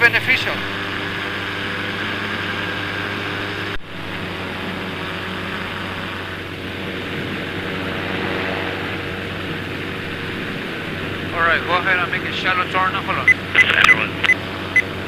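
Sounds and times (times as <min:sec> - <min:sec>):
ultralight engine and propeller: 0:00.0 - 0:15.0
wind rushing: 0:06.7 - 0:11.8.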